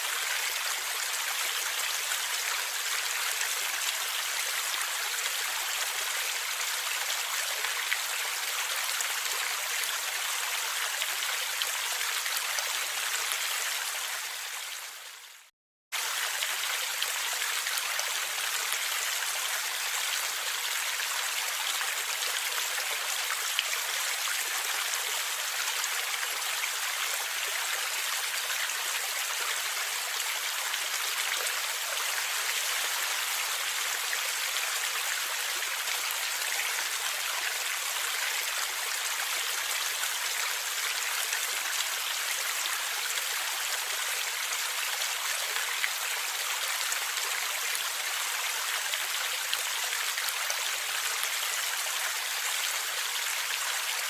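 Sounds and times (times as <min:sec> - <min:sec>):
stream water flowing and gurgling: 0:00.0 - 0:54.0.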